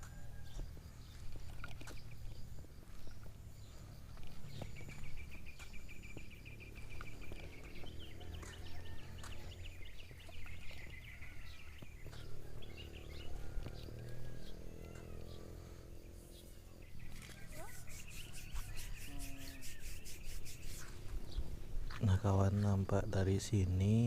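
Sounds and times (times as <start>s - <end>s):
birds chirping: 0.0s - 24.0s
rapid bird trill: 12.0s - 21.0s.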